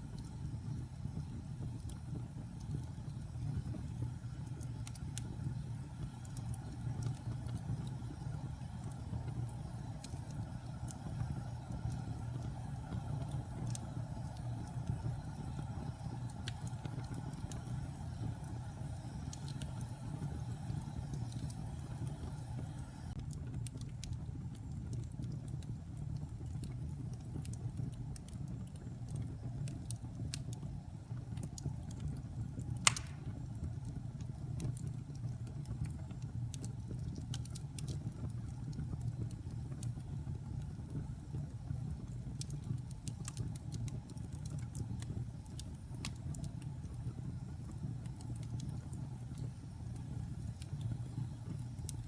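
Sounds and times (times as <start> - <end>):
fire crackling: 0.0 - 52.0
fire flames rumbling: 0.0 - 52.0
wood fire sharp pop: 32.8 - 33.6.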